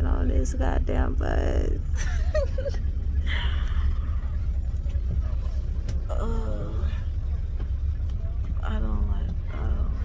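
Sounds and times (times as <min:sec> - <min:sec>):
bus engine and road rumble: 0:00.0 - 0:10.0.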